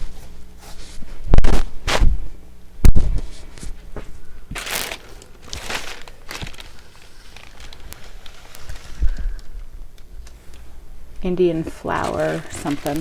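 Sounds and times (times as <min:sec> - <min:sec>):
plastic packaging crinkling: 0:04.5 - 0:10.6, 0:11.4 - 0:13.0.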